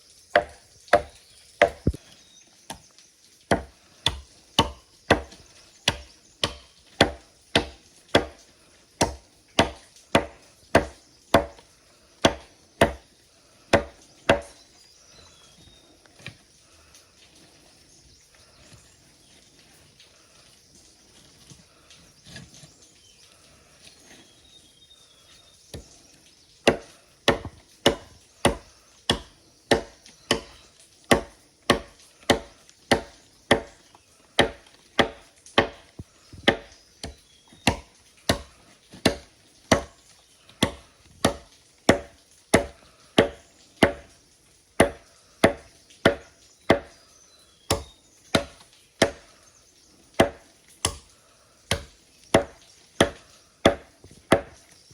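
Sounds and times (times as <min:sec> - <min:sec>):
blade chopping: 0:00.4 - 0:02.0, 0:03.5 - 0:08.4, 0:09.0 - 0:11.6, 0:12.2 - 0:13.0, 0:13.7 - 0:14.6, 0:26.7 - 0:40.0, 0:40.6 - 0:44.1, 0:44.8 - 0:47.0, 0:47.7 - 0:49.3, 0:50.2 - 0:51.1, 0:51.7 - 0:54.6.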